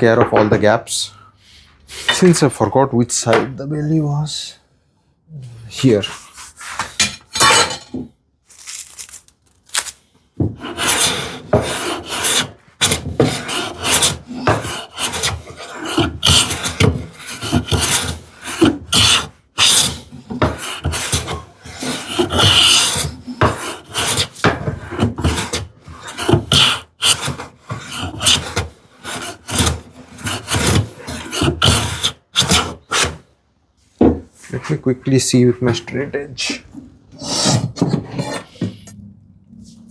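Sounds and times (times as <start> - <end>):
hand plane scraping wood: 10.4 - 33.3, 37.1 - 38.9.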